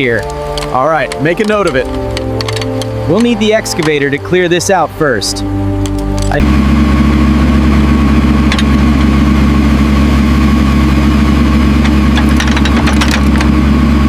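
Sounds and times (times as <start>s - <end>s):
heavy machine engine idling: 6.4s - 14.0s.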